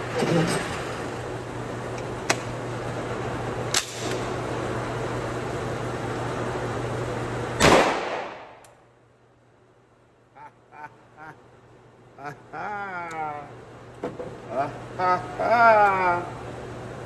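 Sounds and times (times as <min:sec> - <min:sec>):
loud gunshot: 0:07.6 - 0:08.6.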